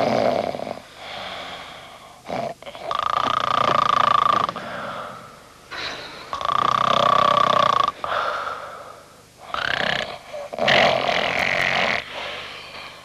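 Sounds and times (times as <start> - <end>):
man snoring with whistling tone: 6.4 - 7.9.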